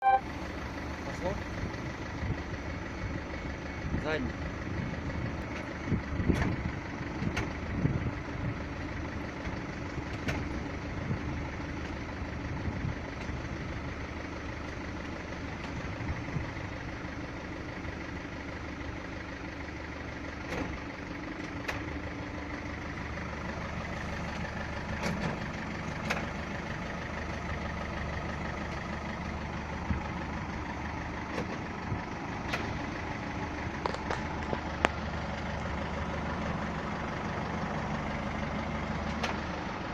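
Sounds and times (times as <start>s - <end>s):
diesel engine idling: 0.0s - 39.9s
transmission clunking: 4.9s - 8.0s, 9.4s - 10.7s, 23.9s - 27.4s, 29.7s - 36.6s, 38.9s - 39.6s.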